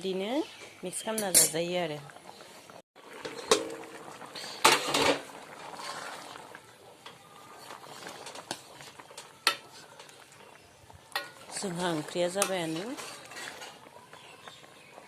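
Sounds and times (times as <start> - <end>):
spoon scraping cookware: 11.2 - 13.8.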